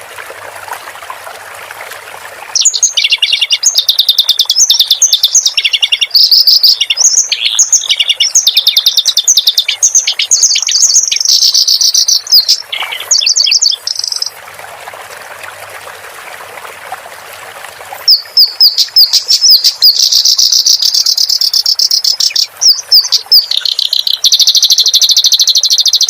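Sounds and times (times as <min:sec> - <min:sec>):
steady water hiss: 0:00.0 - 0:03.9, 0:05.4 - 0:26.0
reed warbler singing: 0:02.6 - 0:14.4, 0:18.1 - 0:26.0.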